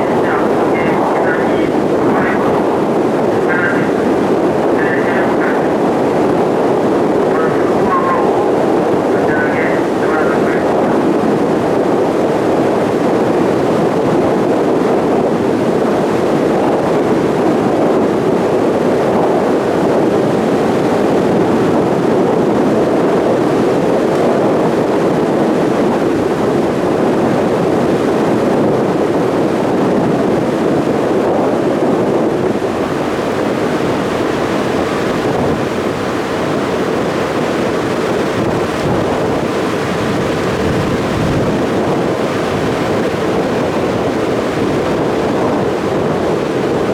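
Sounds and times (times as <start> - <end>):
ferry engine drone: 0.0 - 14.0
water washing past hull: 0.0 - 46.9
wind on microphone: 0.0 - 46.9.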